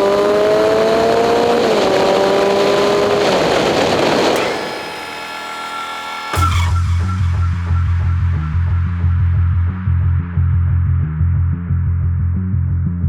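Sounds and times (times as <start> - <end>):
motorcycle engine accelerating: 0.0 - 11.0
low throbbing hum: 4.4 - 13.0.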